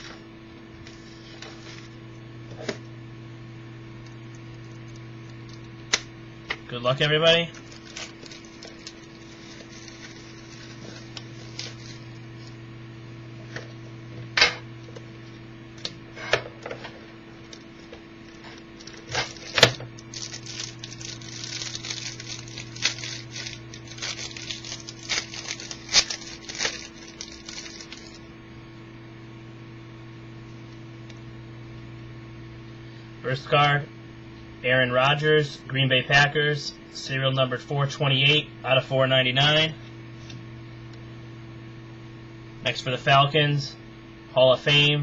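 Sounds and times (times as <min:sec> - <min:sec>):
electrical hum: 0:00.0 - 0:45.0
wrapper crinkling: 0:07.5 - 0:12.2, 0:17.4 - 0:28.3.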